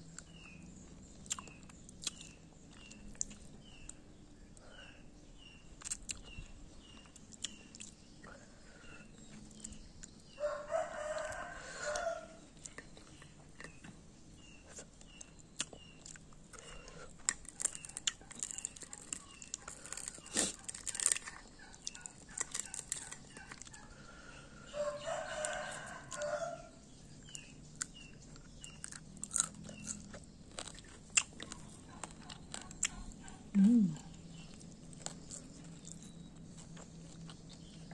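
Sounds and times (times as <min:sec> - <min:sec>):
crunching and chewing crisp food: 0:00.0 - 0:37.9
small bird chirping: 0:00.0 - 0:37.9
rooster crowing: 0:10.4 - 0:12.4, 0:24.7 - 0:26.8.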